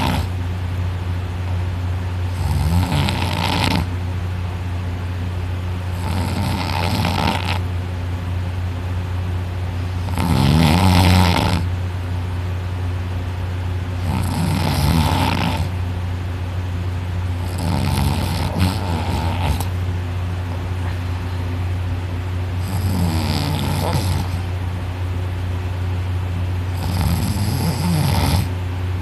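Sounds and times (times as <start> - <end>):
person snoring heavily: 0.0 - 0.4, 2.3 - 3.9, 5.9 - 7.7, 10.0 - 11.7, 14.0 - 15.8, 17.4 - 19.8, 22.6 - 24.5, 26.7 - 28.6
steady low hum: 0.0 - 29.0.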